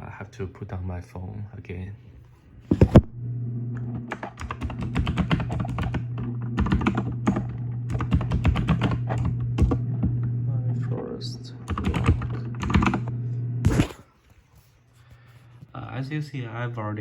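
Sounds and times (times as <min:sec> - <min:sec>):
phone set down on desk: 0:02.7 - 0:03.0
steady low hum: 0:02.7 - 0:14.2
fast typing on keyboard: 0:04.1 - 0:10.1, 0:11.6 - 0:13.1.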